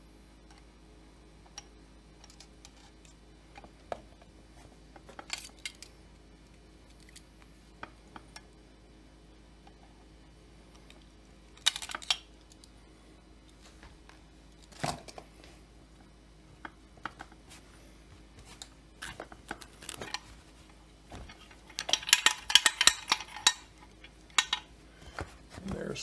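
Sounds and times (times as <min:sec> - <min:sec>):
metal parts clinking and rattling: 0:11.6 - 0:12.2, 0:21.4 - 0:24.7.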